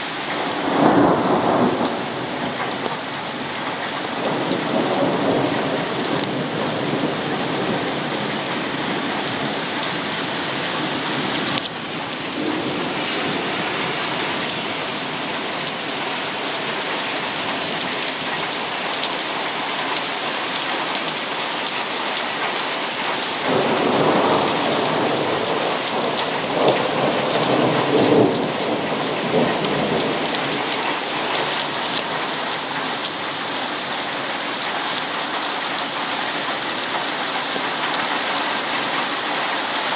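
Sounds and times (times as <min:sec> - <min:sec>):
thunder rolling: 0:00.0 - 0:15.6, 0:23.4 - 0:33.3
heavy rain pouring: 0:00.0 - 0:39.9.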